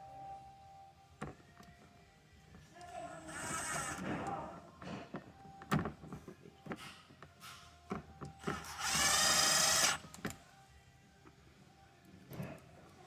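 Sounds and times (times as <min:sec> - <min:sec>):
cordless drill driving screw: 0:03.3 - 0:04.0, 0:08.4 - 0:10.0.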